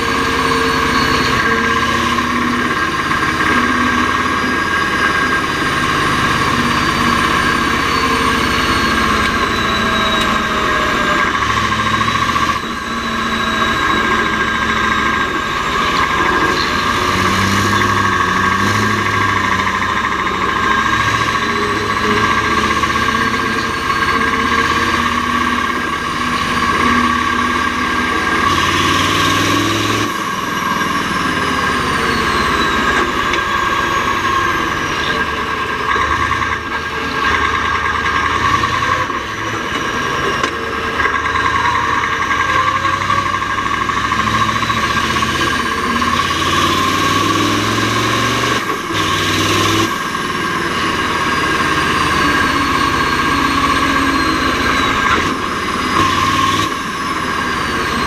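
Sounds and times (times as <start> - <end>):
diesel truck engine running hard: 0.0 - 58.0
high whistle: 6.4 - 19.3.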